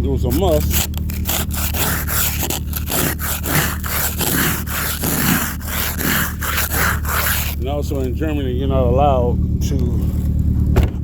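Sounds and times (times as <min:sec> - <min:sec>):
ice scraper scraping windshield: 0:00.0 - 0:08.4.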